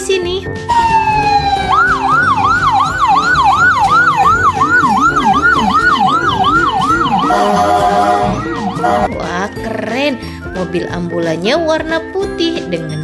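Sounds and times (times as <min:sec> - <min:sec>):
lower siren sound: 0:00.7 - 0:09.1
toy siren wailing: 0:00.7 - 0:09.2.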